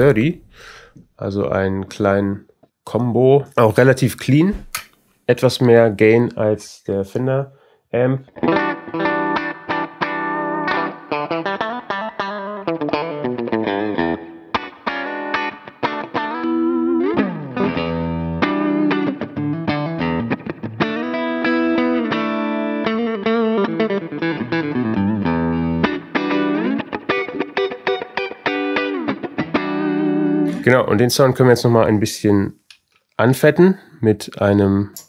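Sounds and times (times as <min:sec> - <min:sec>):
clean electric guitar: 0:08.2 - 0:30.7.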